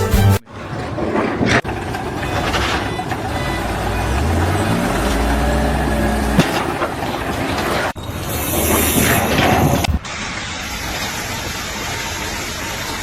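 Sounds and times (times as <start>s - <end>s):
engine drone: 0.5s - 13.0s.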